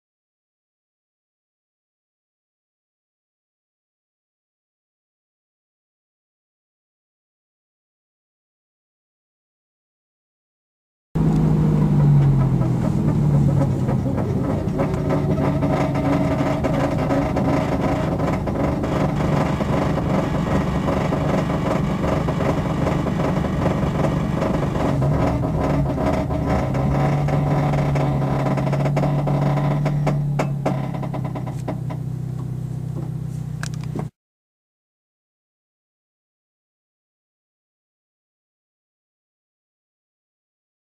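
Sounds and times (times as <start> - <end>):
vehicle engine running: 11.2 - 34.1
sharp clicks: 33.6 - 34.0.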